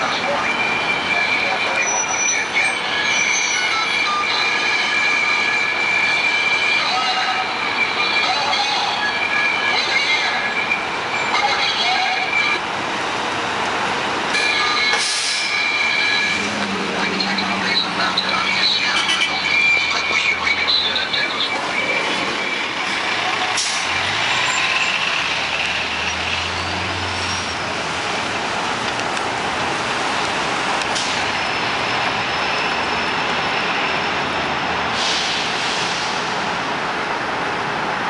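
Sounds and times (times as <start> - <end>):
diesel engine running: 12.6 - 33.6
air brake hisses: 15.0 - 15.6, 35.0 - 36.3.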